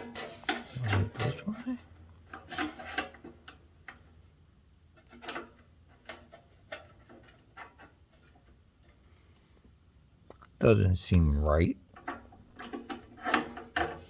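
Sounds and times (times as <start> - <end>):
heater parts clicking and tapping: 11.9 - 14.0.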